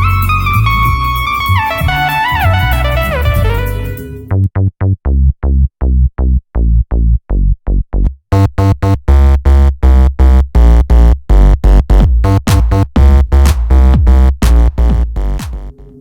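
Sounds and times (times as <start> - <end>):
drum machine beat: 0.0 - 4.1, 10.5 - 16.0
staccato synth bass notes: 0.0 - 16.0.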